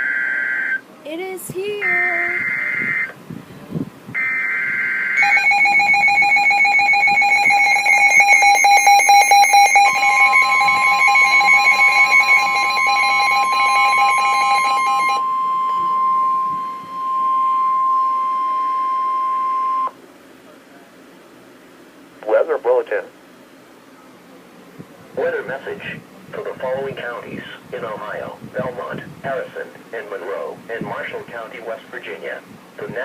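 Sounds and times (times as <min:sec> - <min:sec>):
wavering alarm tone: 0:00.0 - 0:00.8, 0:01.8 - 0:03.1, 0:04.2 - 0:20.0
steady warning tone: 0:01.8 - 0:03.2, 0:04.2 - 0:20.0
digital data bursts: 0:04.2 - 0:15.3.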